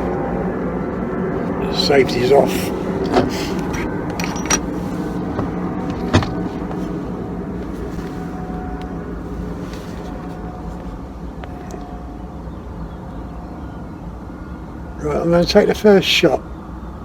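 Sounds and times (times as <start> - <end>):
vehicle engine running: 1.0 - 11.8.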